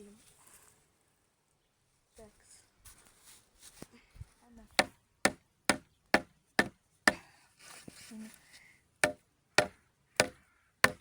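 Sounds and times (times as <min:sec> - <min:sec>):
hammer striking wood: 0:04.8 - 0:07.2, 0:09.0 - 0:11.0.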